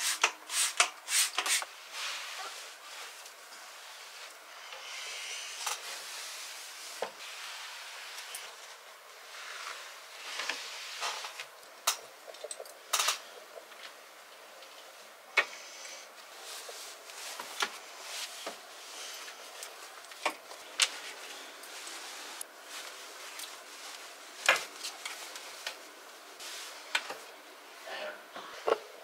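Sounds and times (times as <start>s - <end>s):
soft rustling: 16.1s - 27.3s.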